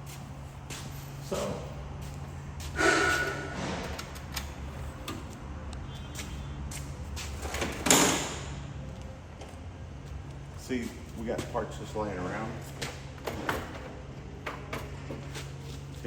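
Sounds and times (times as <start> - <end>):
steady low hum: 0.0 - 16.0
metal cabinet sliding and clattering: 2.8 - 5.3, 7.2 - 8.6.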